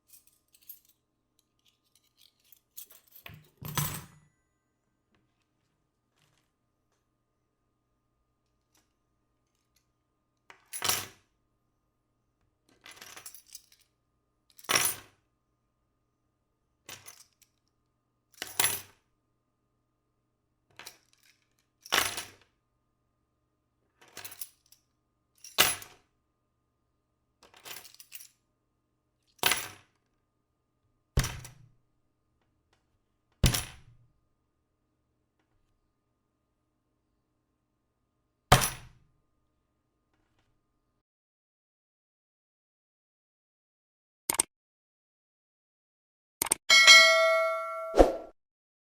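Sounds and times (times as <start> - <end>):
cutlery clattering onto table: 3.3 - 4.2.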